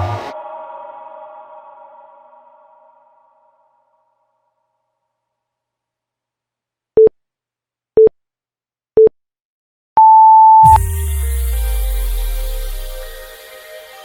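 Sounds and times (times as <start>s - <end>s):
interval timer beeps: 10.0s - 10.8s
electronic music with deep bass: 10.6s - 14.0s.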